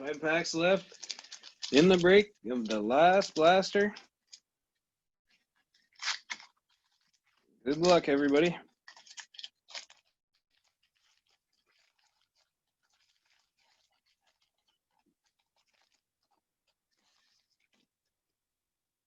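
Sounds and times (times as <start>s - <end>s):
faint wrapper crackling: 0.0s - 4.5s, 5.3s - 17.9s
foil wrapper crinkling: 0.0s - 4.5s, 5.3s - 17.8s.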